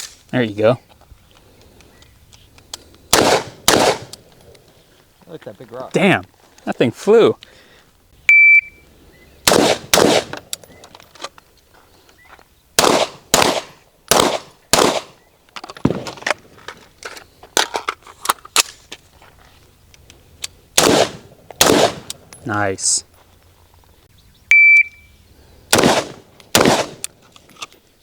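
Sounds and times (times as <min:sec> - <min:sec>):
rifle shots: 0:03.1 - 0:04.2, 0:09.4 - 0:10.5, 0:12.8 - 0:15.2, 0:15.8 - 0:16.2, 0:20.8 - 0:22.2, 0:25.7 - 0:27.1
handgun shots: 0:03.2 - 0:04.1, 0:09.5 - 0:10.4, 0:12.8 - 0:15.2, 0:20.8 - 0:22.2, 0:25.8 - 0:27.1.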